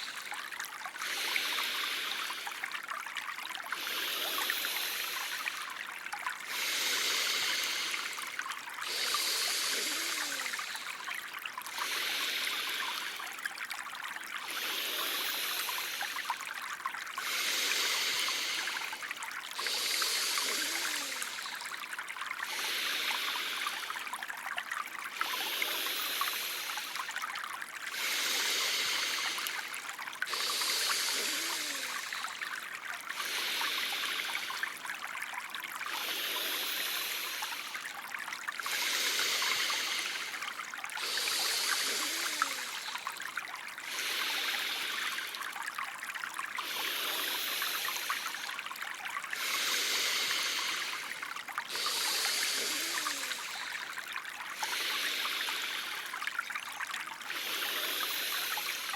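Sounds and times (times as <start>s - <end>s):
stream water trickling: 0.0s - 58.9s.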